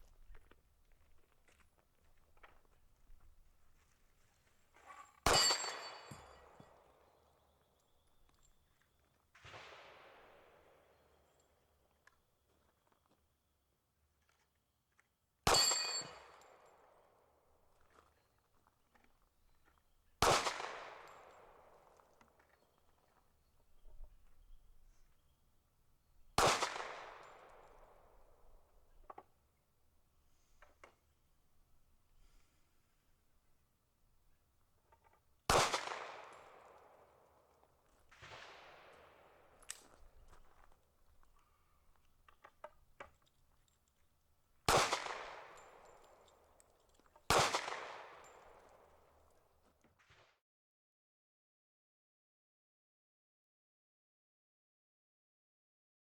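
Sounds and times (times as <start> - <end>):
faint metallic clinks: 0.0 - 9.2, 15.5 - 16.9, 39.6 - 44.3, 45.4 - 47.3
gunshot with echo: 20.2 - 21.4, 26.4 - 27.8, 35.5 - 36.6, 44.7 - 45.8, 47.3 - 48.3.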